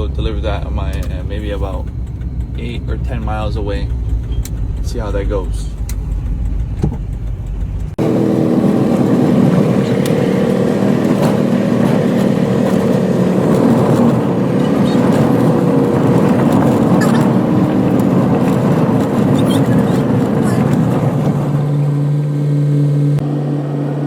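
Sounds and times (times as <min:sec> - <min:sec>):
truck diesel engine drone: 0:00.0 - 0:24.0.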